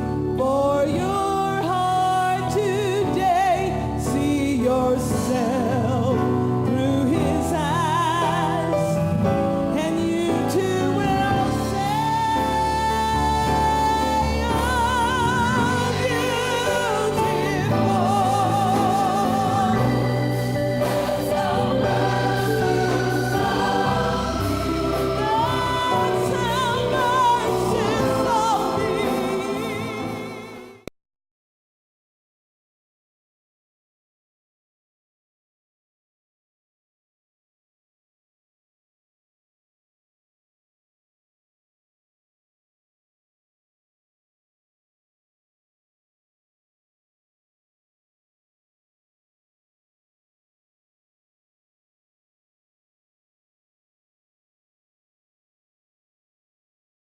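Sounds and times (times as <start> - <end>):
gospel choir singing: 0.2 - 30.9.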